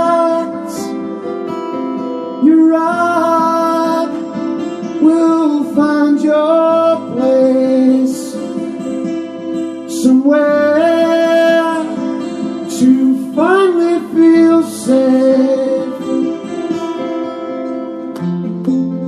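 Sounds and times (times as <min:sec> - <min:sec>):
person singing long notes: 0:00.0 - 0:01.2, 0:02.4 - 0:08.8, 0:09.9 - 0:16.6
guitar accompaniment: 0:00.0 - 0:19.0.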